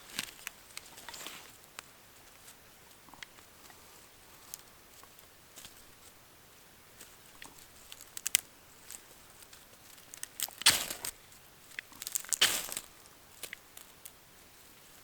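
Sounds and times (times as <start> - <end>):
dry wood clicks and crinkles: 0.0 - 3.8, 7.0 - 14.2
short scraping or tearing: 10.6 - 11.1.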